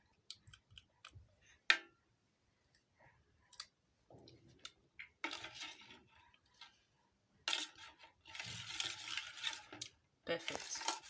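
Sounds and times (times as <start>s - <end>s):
rustling and scraping: 5.2s - 11.0s.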